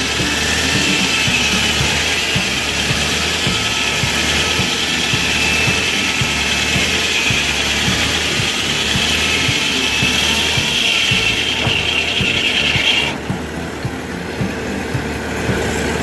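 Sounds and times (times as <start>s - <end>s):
engine running under load: 0.0s - 16.0s
high whine: 0.0s - 16.0s.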